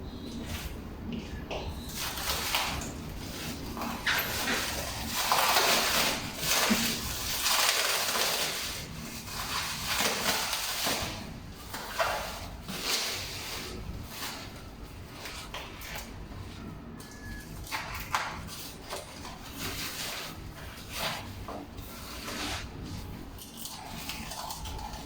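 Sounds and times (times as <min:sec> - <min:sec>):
packaging rustling and crinkling: 0:00.2 - 0:25.0.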